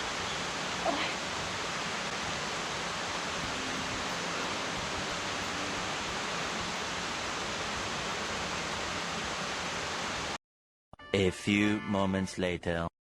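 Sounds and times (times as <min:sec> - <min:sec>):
waterfall rushing: 0:00.0 - 0:10.4.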